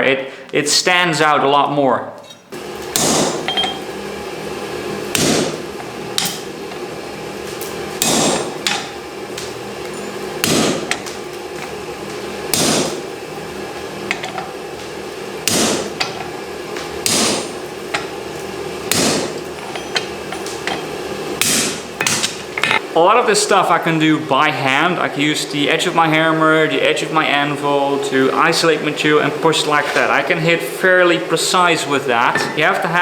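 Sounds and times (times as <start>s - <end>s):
hammer striking steel on anvil: 2.2s - 3.9s, 5.1s - 5.6s, 6.2s - 6.5s, 8.0s - 11.2s, 12.5s - 13.0s, 15.5s - 16.3s, 17.0s - 18.1s, 18.9s - 22.8s
steady hum: 2.2s - 33.0s.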